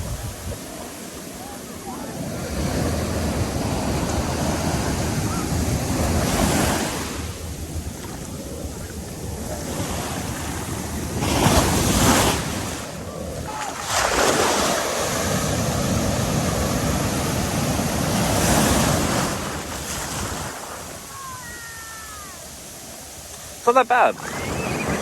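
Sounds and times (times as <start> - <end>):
wind buffeting microphone: 0.0 - 0.8, 24.2 - 25.0
ocean waves breaking: 0.0 - 25.0.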